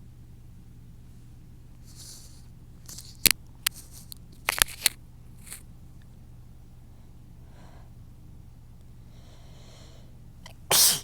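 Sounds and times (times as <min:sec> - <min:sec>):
sharp sniffs: 0:01.8 - 0:02.5, 0:10.7 - 0:11.0
faint breath drawn in: 0:07.0 - 0:08.0, 0:09.0 - 0:10.2.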